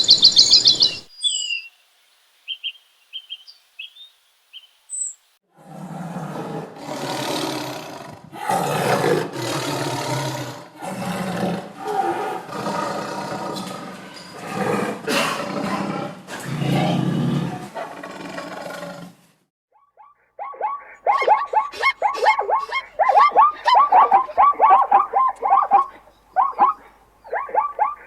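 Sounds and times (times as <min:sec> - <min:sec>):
big cat roaring: 0:05.5 - 0:19.2.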